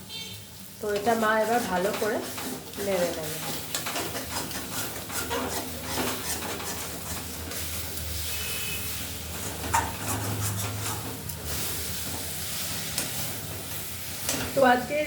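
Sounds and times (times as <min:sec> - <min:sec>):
faint sizzle: 0:00.0 - 0:04.3, 0:07.0 - 0:10.0, 0:10.6 - 0:15.0
spatula scraping and knocking pan: 0:00.9 - 0:07.7, 0:09.3 - 0:13.2.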